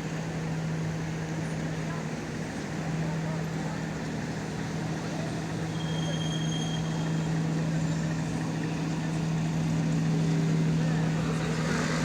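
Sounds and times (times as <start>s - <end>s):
boat engine humming: 6.8s - 11.7s.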